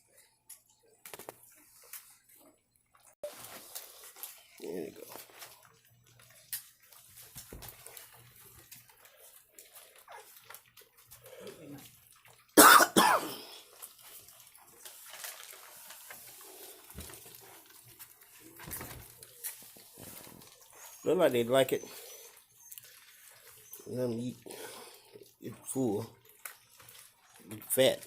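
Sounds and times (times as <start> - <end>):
puppies eating wet food: 0.0 - 28.0.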